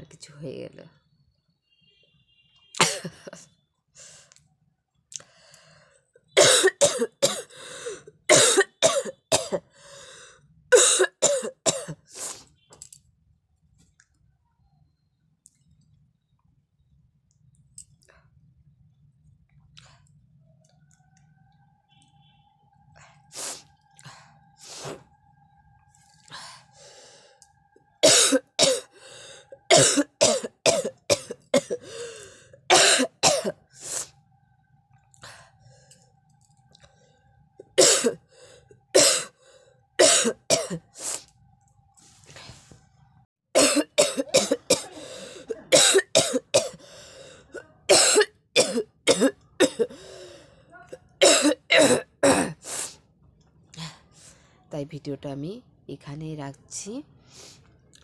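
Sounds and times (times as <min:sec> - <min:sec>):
person coughing: 0:02.8 - 0:03.4, 0:06.4 - 0:09.7, 0:10.8 - 0:12.1, 0:28.0 - 0:28.9, 0:29.7 - 0:32.1, 0:32.7 - 0:33.6, 0:37.8 - 0:38.2, 0:39.0 - 0:39.3, 0:40.0 - 0:40.9, 0:43.6 - 0:46.8, 0:47.5 - 0:50.0, 0:50.9 - 0:52.6.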